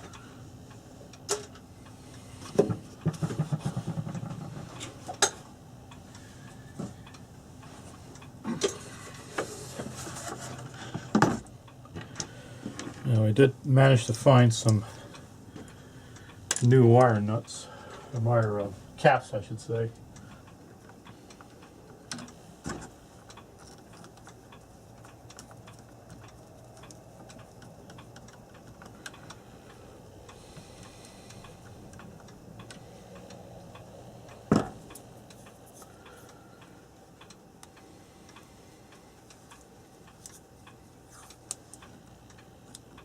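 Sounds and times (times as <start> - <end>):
faint steady hum: 0.0 - 43.0
small clicks and taps: 20.2 - 29.4.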